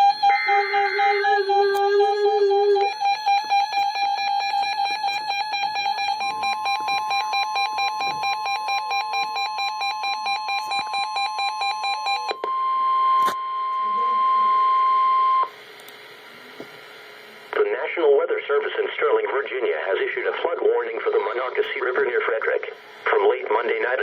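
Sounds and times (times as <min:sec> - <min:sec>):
sharp electronic beeps: 0:00.0 - 0:03.2
warning alarm tone: 0:00.0 - 0:15.5.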